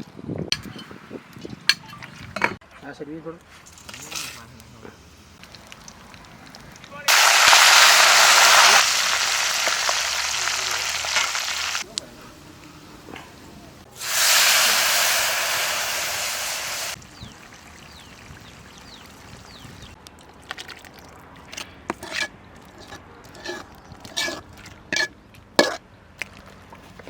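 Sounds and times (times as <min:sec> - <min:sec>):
food sizzling in hot oil: 0:07.1 - 0:11.8, 0:14.0 - 0:19.3.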